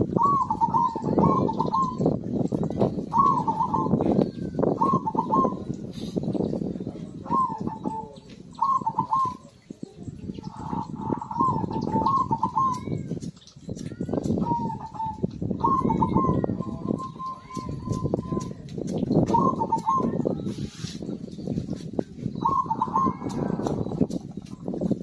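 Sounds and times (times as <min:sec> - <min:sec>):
dove cooing: 0:00.0 - 0:02.2, 0:02.8 - 0:13.2, 0:14.4 - 0:18.5, 0:19.2 - 0:20.9, 0:22.2 - 0:24.8.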